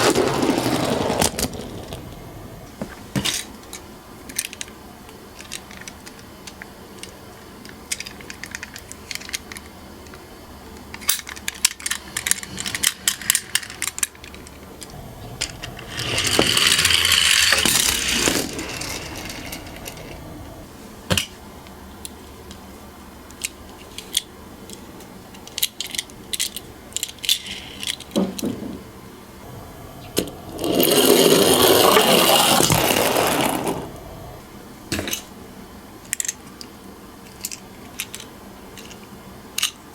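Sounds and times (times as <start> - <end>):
toy cars rolling and rattling: 0.0 - 2.2, 5.4 - 10.2, 10.9 - 14.7, 15.3 - 20.6, 23.4 - 28.5, 30.2 - 34.1, 37.2 - 39.8
toy cars clicking and clattering: 3.3 - 10.2, 10.8 - 14.7, 15.4 - 20.2, 23.3 - 28.2, 30.6 - 33.9, 36.0 - 39.8.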